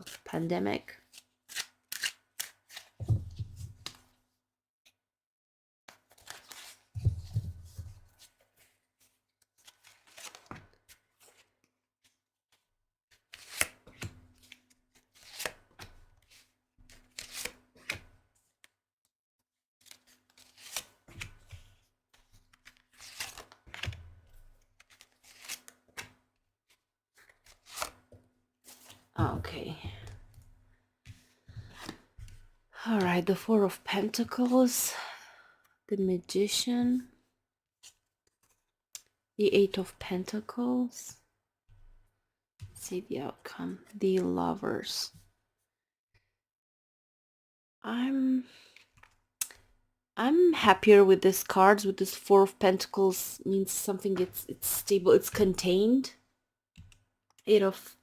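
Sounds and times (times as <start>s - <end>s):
cards being shuffled: 9.6s - 10.6s, 13.2s - 16.0s, 16.9s - 18.1s, 19.9s - 21.7s, 22.5s - 24.0s, 24.8s - 26.1s, 27.2s - 28.0s.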